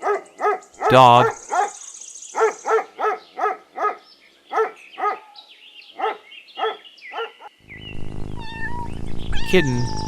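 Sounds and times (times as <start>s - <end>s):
dog barking: 0.0s - 1.8s, 2.4s - 5.4s, 6.0s - 7.5s
birds chirping faintly: 0.0s - 10.0s.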